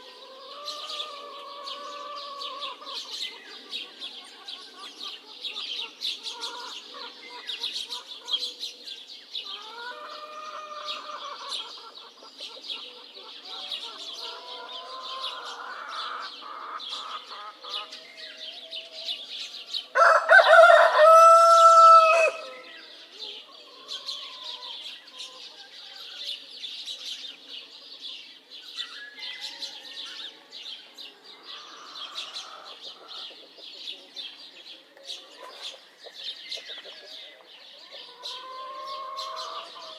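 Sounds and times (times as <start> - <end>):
chickens calling: 0.0 - 39.9
small birds chirping: 0.0 - 39.9
rooster crowing: 20.0 - 22.6.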